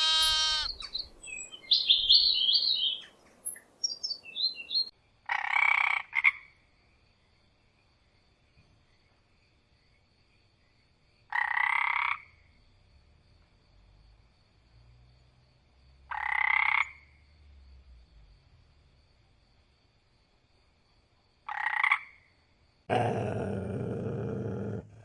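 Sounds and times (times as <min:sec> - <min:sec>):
animal calls: 0:00.0 - 0:00.8
bird chirps: 0:00.0 - 0:04.9.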